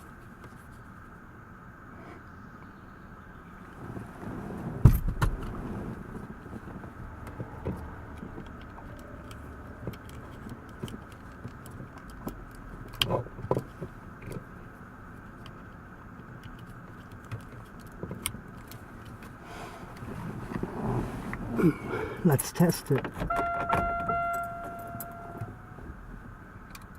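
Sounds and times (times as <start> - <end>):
small parts clicking and rattling: 8.2 - 14.6, 15.2 - 19.3.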